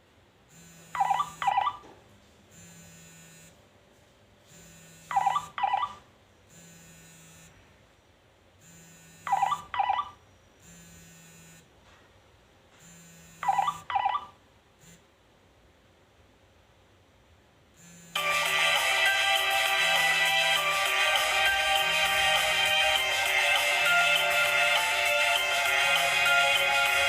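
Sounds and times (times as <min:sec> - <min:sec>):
phone vibrating buzz: 0:00.5 - 0:01.9, 0:02.5 - 0:03.6, 0:04.4 - 0:07.6, 0:08.6 - 0:10.0, 0:10.6 - 0:11.7, 0:12.7 - 0:14.2, 0:14.8 - 0:15.1, 0:17.8 - 0:27.0.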